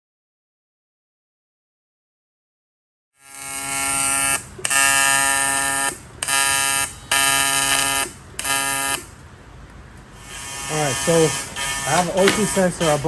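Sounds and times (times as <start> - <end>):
alarm tone blasts: 3.2 - 9.1, 10.3 - 13.0.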